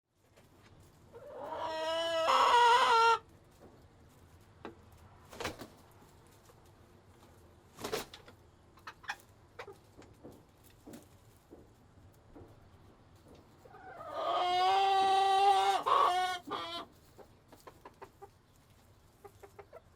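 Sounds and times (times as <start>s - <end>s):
hens clucking: 1.1s - 3.3s, 7.4s - 11.0s, 12.7s - 19.9s.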